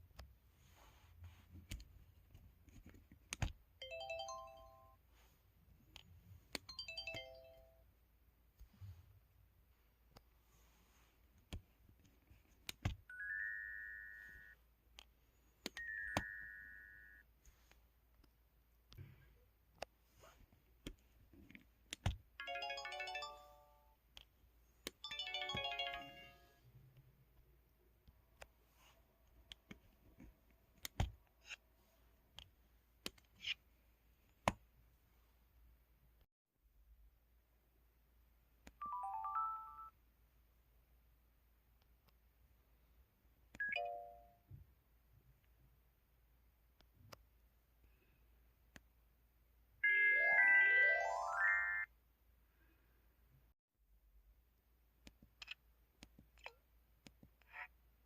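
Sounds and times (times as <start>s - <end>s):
electronic phone chime: 49.8s - 51.9s.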